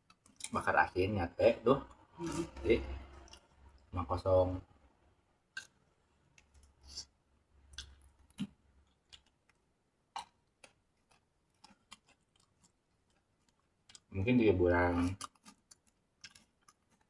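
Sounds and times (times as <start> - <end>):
faint clicks and ticks: 0.0 - 0.7.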